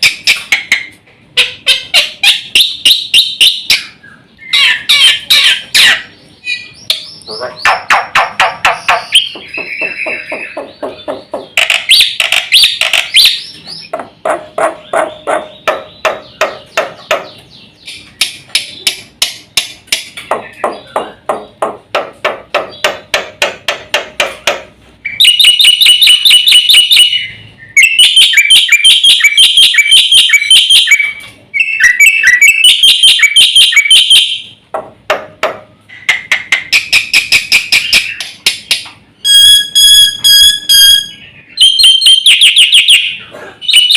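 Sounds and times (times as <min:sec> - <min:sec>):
starling singing: 0:00.0 - 0:19.2, 0:20.3 - 0:21.8, 0:25.0 - 0:34.6, 0:35.9 - 0:43.9
rattling bird trills: 0:00.0 - 0:19.4.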